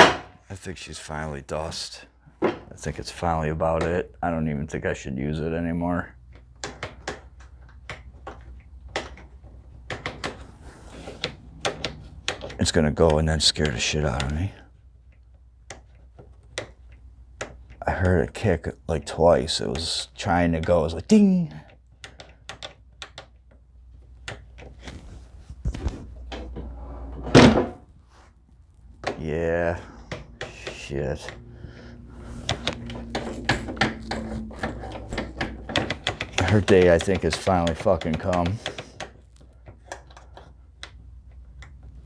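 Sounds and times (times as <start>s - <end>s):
clicks and taps on table saw: 6.6s - 14.4s, 29.9s - 41.9s
steady low hum: 24.8s - 42.0s
heavy thumps: 28.8s - 39.0s.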